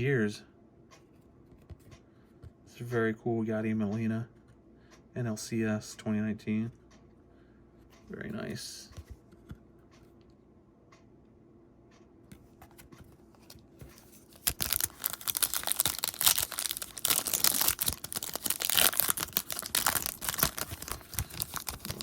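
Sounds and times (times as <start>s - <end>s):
foil wrapper tearing and crinkling: 14.3s - 22.0s.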